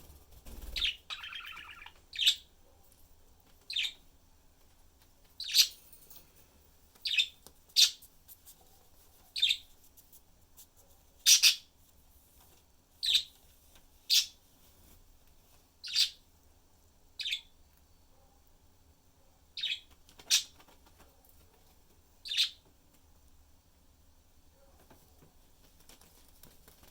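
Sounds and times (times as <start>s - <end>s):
budgerigars chirping: 0.6s - 2.4s, 15.8s - 16.2s, 22.2s - 22.6s.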